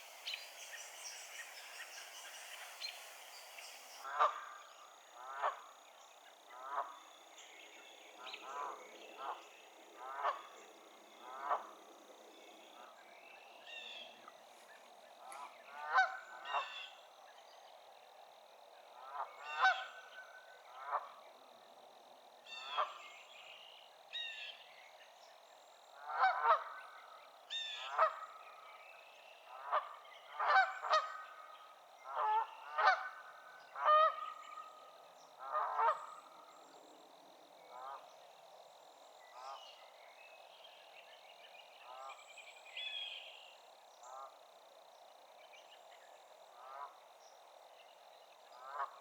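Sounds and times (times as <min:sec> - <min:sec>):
geese honking: 0:00.0 - 0:04.2.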